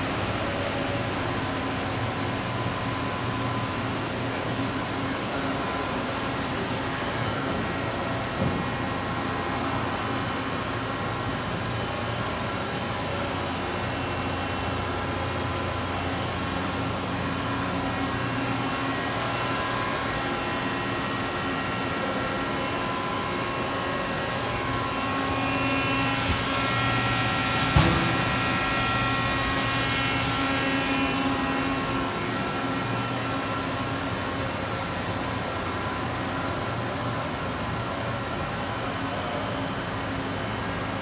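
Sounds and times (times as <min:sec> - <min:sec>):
sharp knock: 0:27.5 - 0:28.7.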